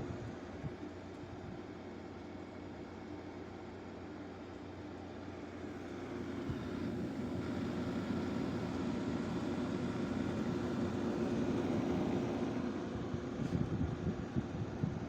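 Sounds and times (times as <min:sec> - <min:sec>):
air conditioner fan rushing: 0:00.0 - 0:15.0.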